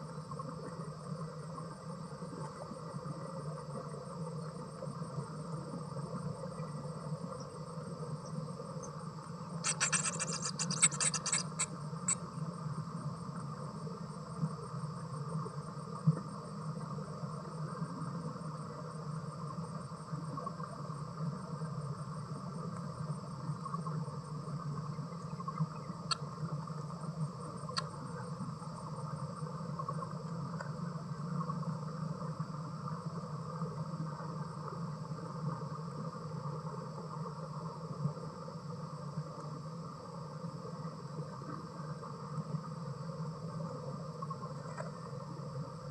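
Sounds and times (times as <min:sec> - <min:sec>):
crickets chirping: 0:00.0 - 0:45.9
faint ticks: 0:06.1 - 0:12.3, 0:24.8 - 0:28.4, 0:29.7 - 0:31.6, 0:44.2 - 0:45.3
insect rapid clicking: 0:08.8 - 0:12.4, 0:25.2 - 0:26.4, 0:27.5 - 0:28.2.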